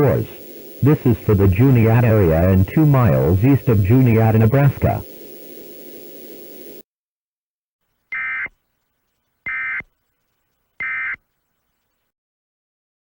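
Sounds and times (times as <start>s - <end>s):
buzzy digital data bursts: 0.0s - 6.8s.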